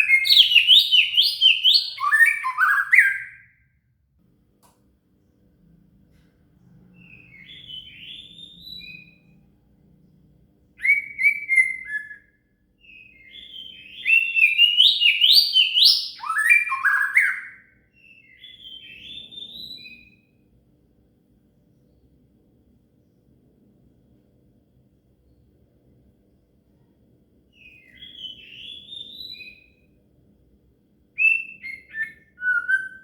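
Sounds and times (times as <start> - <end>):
bird song whistles and chatter: 0.0 - 3.6, 7.0 - 9.4, 10.8 - 20.3, 27.5 - 29.9, 31.2 - 33.0.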